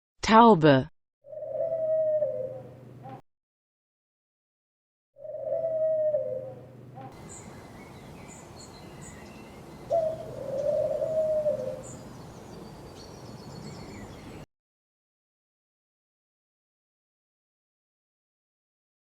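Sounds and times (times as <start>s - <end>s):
pigeon cooing: 1.3s - 3.2s, 5.2s - 14.4s
small birds chirping: 7.0s - 14.5s.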